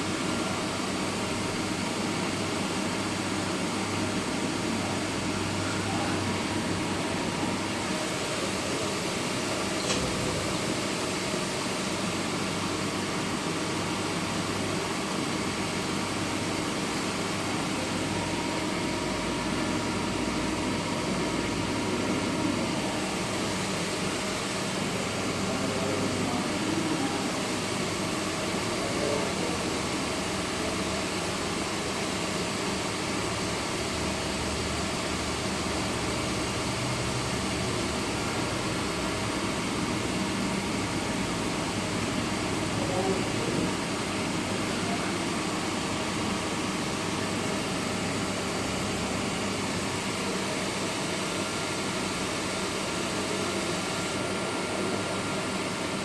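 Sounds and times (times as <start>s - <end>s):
mechanical whirring hum: 0.0s - 56.0s.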